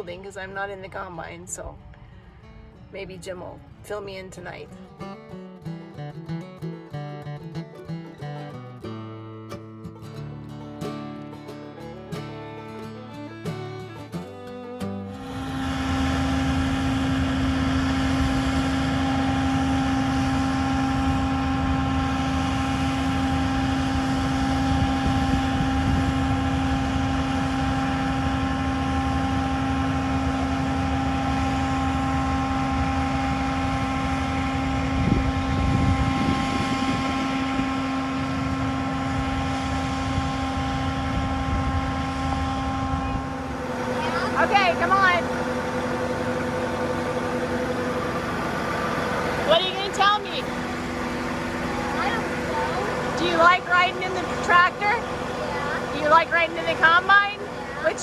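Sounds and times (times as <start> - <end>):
farm machine engine running: 9.9 - 58.0
steady whine: 11.8 - 58.0.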